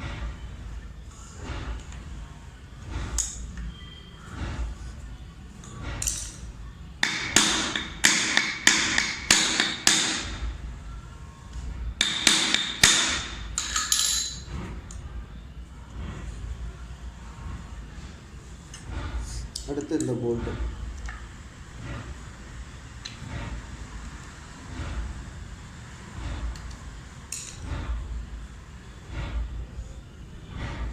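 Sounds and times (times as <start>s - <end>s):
hammer tapping on metal: 7.0s - 10.4s, 12.0s - 14.4s.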